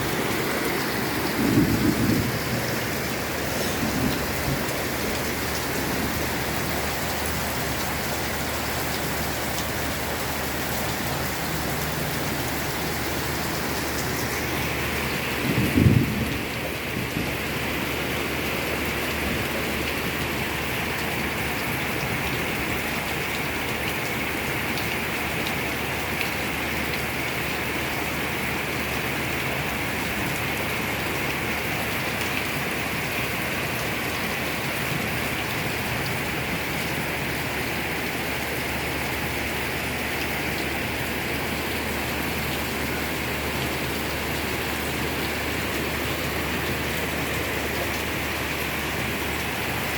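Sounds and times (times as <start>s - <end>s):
heavy rain falling: 0.0s - 49.9s.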